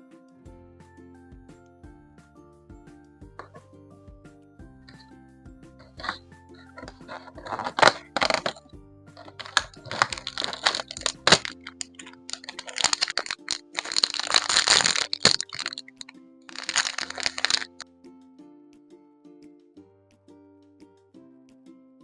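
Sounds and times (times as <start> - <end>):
soft background music: 0.0 - 22.0
plastic packaging crinkling: 5.8 - 8.6, 9.2 - 17.8.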